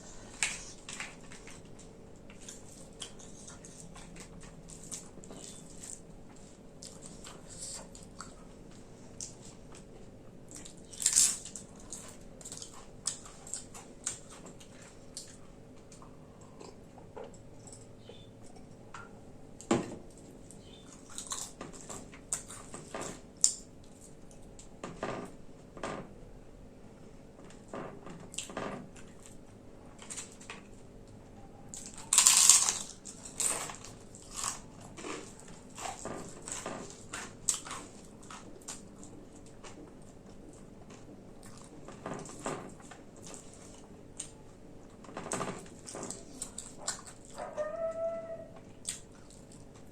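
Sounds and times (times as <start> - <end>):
person chewing and biting: 31.7 - 39.1
food crunching: 31.7 - 47.4.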